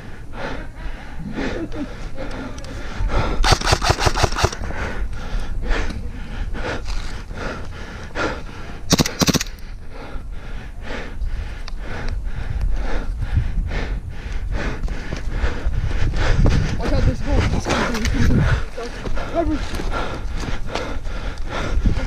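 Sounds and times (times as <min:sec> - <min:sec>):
hard breathing: 0:00.0 - 0:22.0
airsoft gun firing bursts: 0:03.4 - 0:04.6, 0:08.9 - 0:09.5.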